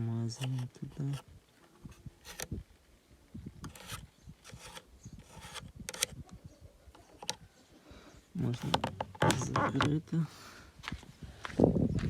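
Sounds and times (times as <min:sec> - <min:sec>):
hand rubbing and scraping: 0:00.0 - 0:02.5, 0:03.6 - 0:06.1, 0:08.4 - 0:10.0.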